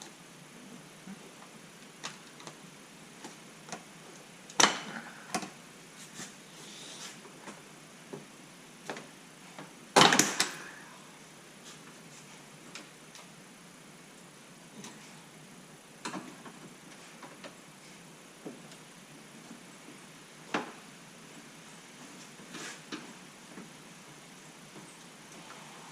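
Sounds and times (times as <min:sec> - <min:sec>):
loud sharp plastic snaps: 0:10.0 - 0:10.6.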